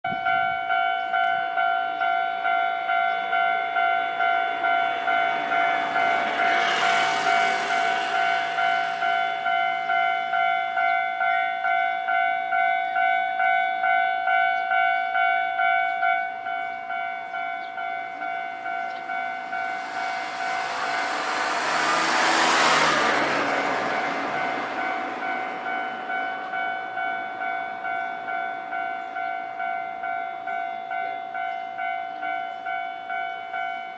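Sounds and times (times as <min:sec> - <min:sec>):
level-crossing alarm bell clanging: 0:00.1 - 0:33.9
train rushing past: 0:02.4 - 0:12.2, 0:17.7 - 0:30.2.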